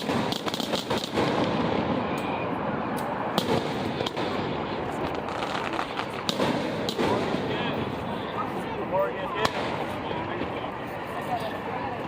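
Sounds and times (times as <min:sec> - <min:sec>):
fireworks pops and crackles: 0:00.0 - 0:02.2, 0:02.9 - 0:07.8, 0:09.3 - 0:10.6
firework bangs: 0:00.0 - 0:08.0, 0:09.3 - 0:10.1
continuous rumbling noise: 0:00.0 - 0:12.0.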